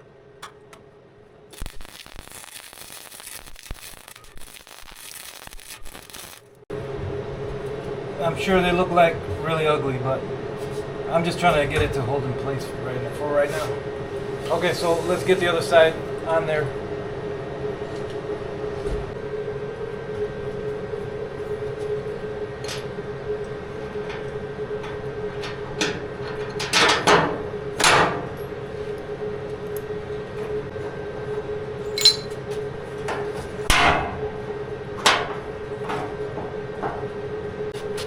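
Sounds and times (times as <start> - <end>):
steady hum: 0.0 - 25.3.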